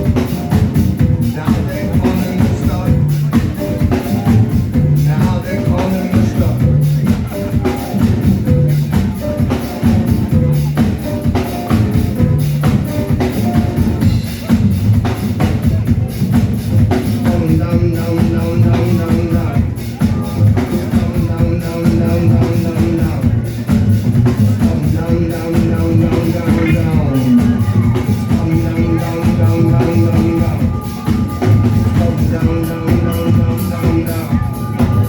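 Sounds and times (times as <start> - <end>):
drum kit and bass groove: 0.0 - 35.0
sustained melodic figure: 25.0 - 35.0.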